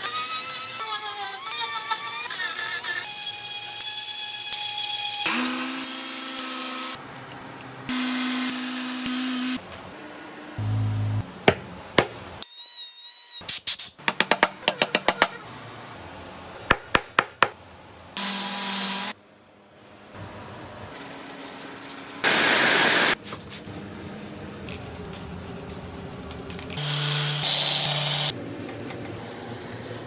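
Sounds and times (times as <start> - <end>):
sharp taps and knocks: 11.5 - 12.2, 16.7 - 17.6.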